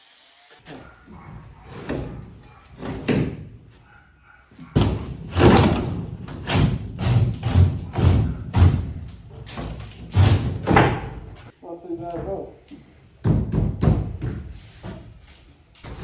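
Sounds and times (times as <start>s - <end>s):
knocks and heavy thumps: 4.7s - 11.5s.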